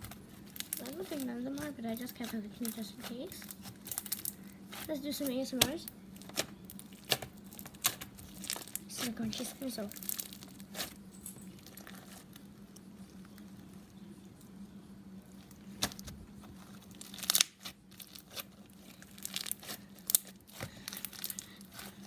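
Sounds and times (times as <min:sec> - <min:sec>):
slime squished crackling: 0:00.0 - 0:11.0, 0:15.7 - 0:22.0
faint low hum: 0:00.0 - 0:22.0.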